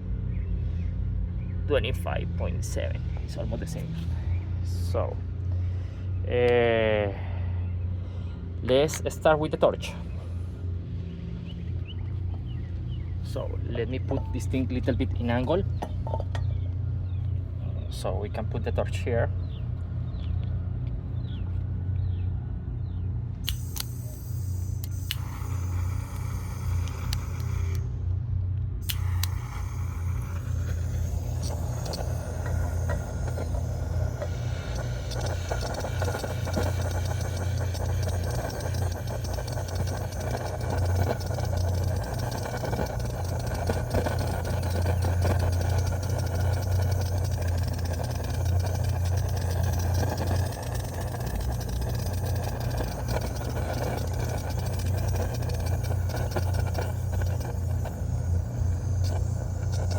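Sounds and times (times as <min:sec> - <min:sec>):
gas torch rumbling: 0:01.6 - 0:19.6, 0:23.4 - 0:59.9
gas torch rushing hiss: 0:23.5 - 0:28.0, 0:28.8 - 0:59.9.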